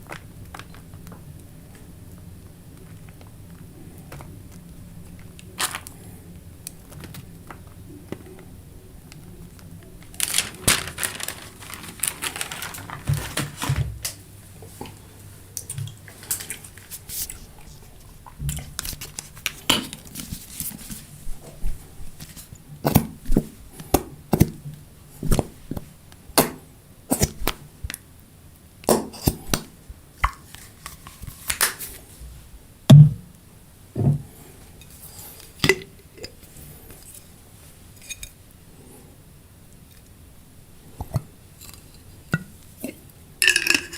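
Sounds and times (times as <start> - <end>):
wrapper crinkling: 5.3 - 6.0, 10.0 - 14.3, 15.8 - 22.6, 30.4 - 32.0.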